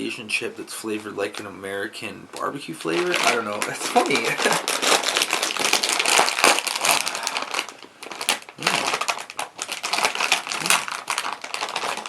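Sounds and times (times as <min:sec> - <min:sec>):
plastic chip bag crinkling: 0:00.7 - 0:12.0.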